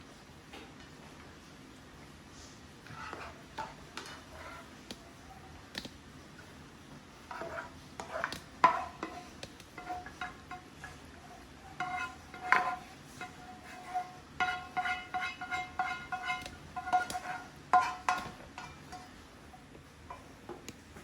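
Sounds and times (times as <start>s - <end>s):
metal utensil clinking on cookware: 7.3s - 19.2s.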